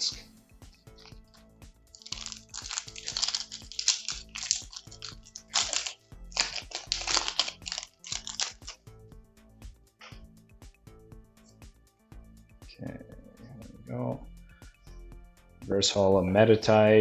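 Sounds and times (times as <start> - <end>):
quiet background music: 0.0 - 17.0
foil wrapper crinkling and tearing: 2.0 - 8.8.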